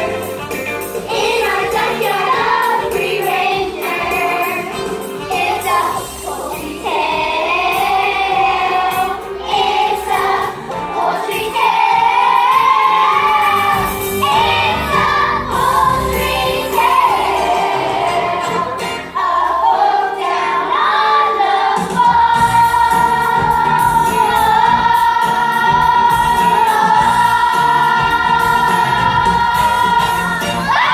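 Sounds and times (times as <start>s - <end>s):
ensemble of singers: 0.0s - 30.9s
musical accompaniment: 0.0s - 30.9s.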